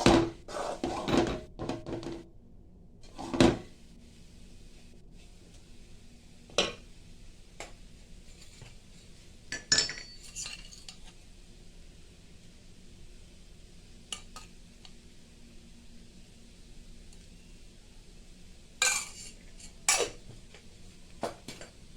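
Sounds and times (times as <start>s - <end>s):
utensils clinking on metal dishes: 9.5s - 11.1s, 18.8s - 20.2s.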